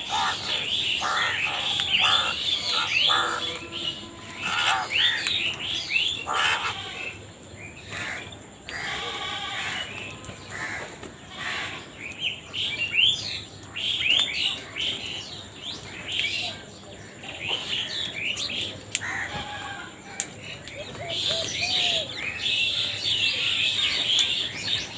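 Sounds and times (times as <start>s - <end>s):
crows cawing: 0.0s - 3.6s, 4.3s - 5.3s, 6.2s - 7.1s, 10.5s - 11.9s, 19.0s - 20.3s
birds chirping: 0.0s - 24.9s.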